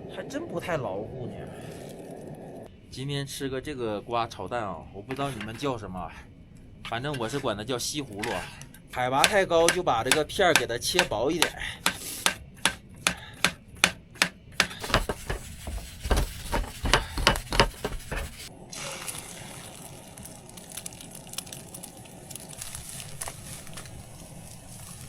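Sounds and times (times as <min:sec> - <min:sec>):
knife chopping on cutting board: 0:09.0 - 0:18.5
faint crackles: 0:19.1 - 0:25.0.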